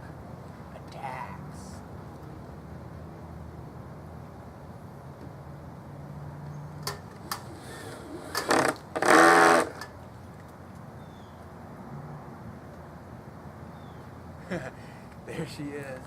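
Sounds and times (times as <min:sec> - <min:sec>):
cordless drill driving screw: 0:07.6 - 0:09.9.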